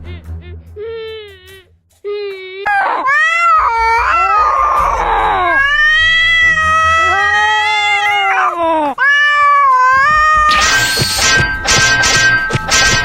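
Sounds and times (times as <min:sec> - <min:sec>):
cat meowing: 0:02.7 - 0:11.2.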